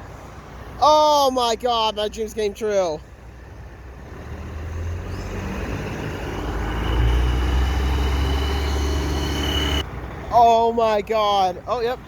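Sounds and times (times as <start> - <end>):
vehicle engine rumble: 0.0 - 12.0.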